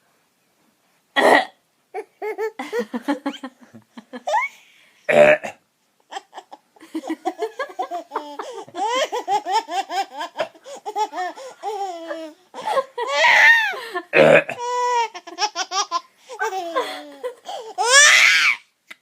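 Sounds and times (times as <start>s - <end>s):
fake burp: 1.2s - 1.6s, 5.1s - 5.6s, 14.1s - 14.6s
baby laughing: 1.9s - 3.4s, 4.2s - 4.6s, 6.0s - 13.9s, 14.6s - 18.6s.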